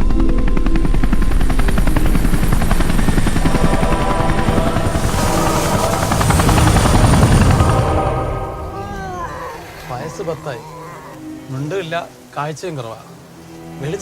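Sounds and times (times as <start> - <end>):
helicopter rotor blades chopping: 0.0 - 9.0
rushing noise: 1.5 - 10.3.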